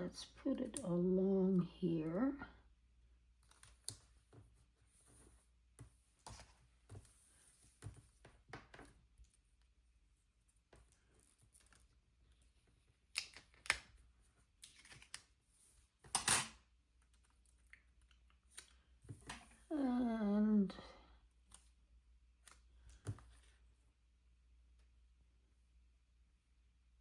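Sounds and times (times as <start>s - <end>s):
paper and stickers rustling: 3.3s - 19.7s.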